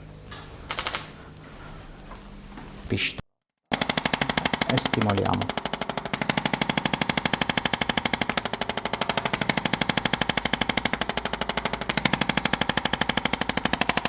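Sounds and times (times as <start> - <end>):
massage gun hammering: 3.7 - 14.0.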